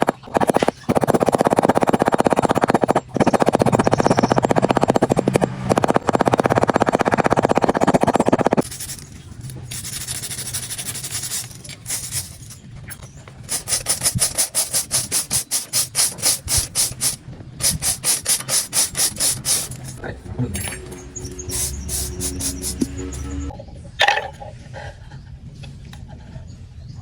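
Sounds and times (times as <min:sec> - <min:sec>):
hand tool rasping on metal: 0:00.0 - 0:20.0.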